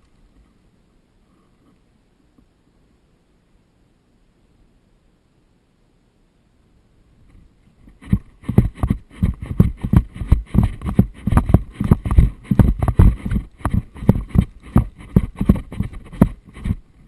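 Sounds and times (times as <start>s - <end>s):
running footsteps: 7.9s - 16.8s.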